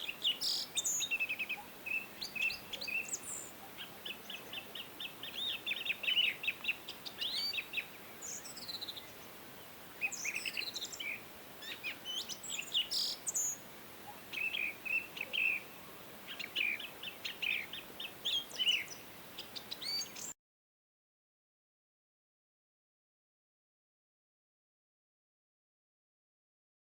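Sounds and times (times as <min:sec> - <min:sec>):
songbirds chirping and trilling: 0:00.0 - 0:20.4.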